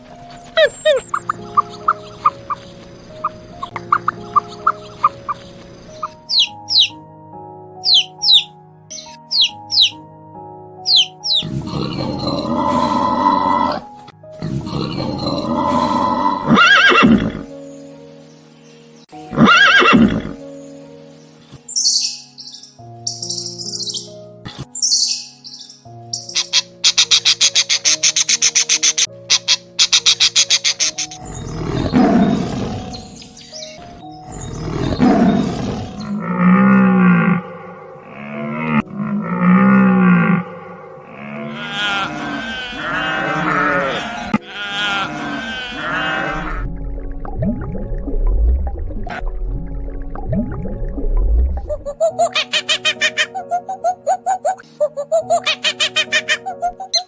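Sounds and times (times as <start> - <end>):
background music: 0.0 - 57.0
bird chirp: 0.3 - 7.0, 7.8 - 10.0, 10.8 - 12.6, 24.8 - 36.2
animal drawn-out call: 0.5 - 1.4, 14.6 - 17.4, 34.3 - 46.7
rapid chirping pulses: 0.6 - 7.0
large animal roaring: 11.4 - 17.5, 34.3 - 46.7
horse neighing: 14.5 - 17.5, 19.3 - 20.4, 41.1 - 46.7.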